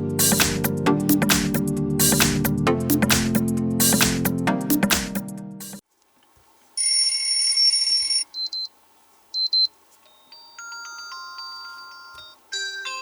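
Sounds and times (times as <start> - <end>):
chiming melody of rising notes: 10.3 - 13.0.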